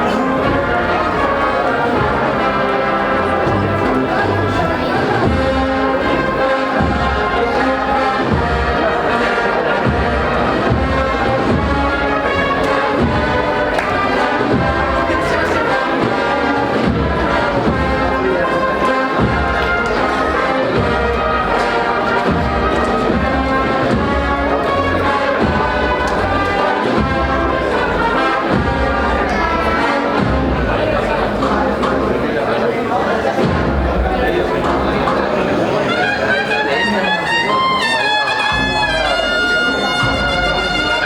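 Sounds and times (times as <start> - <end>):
brass band playing a march: 0.0 - 41.0
bass drum beat: 9.8 - 18.4, 19.2 - 32.3, 33.4 - 35.4.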